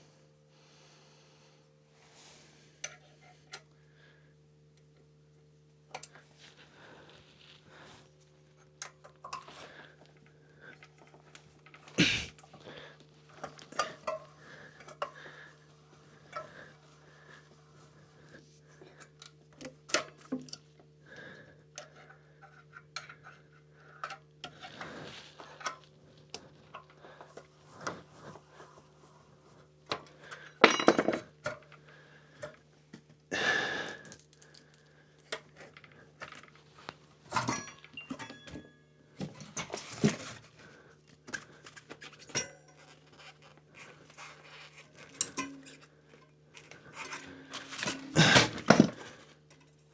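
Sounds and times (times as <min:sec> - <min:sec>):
metal tools clinking and knocking: 0:30.6 - 0:31.3, 0:37.3 - 0:38.7.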